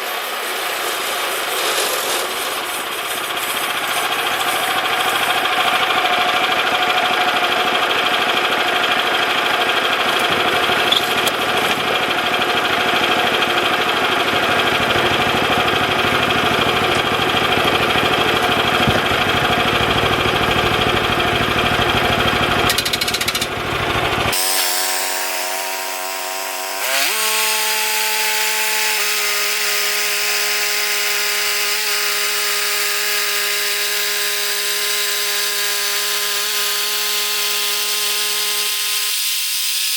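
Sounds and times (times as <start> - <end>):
band saw cutting wood: 0.0 - 7.0, 10.0 - 39.9.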